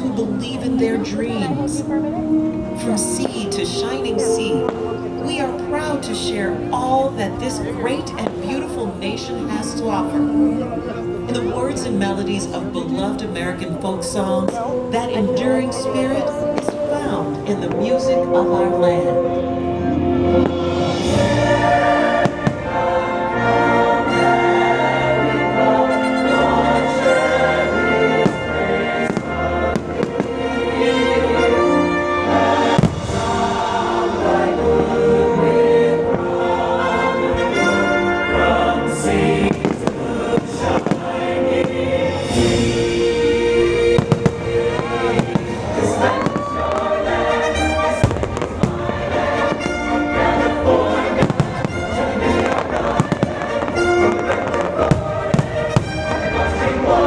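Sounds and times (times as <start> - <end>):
orchestral and choral music: 0.0 - 57.0
fireworks bursting and crackling: 32.6 - 34.6, 39.4 - 47.0, 47.6 - 56.9.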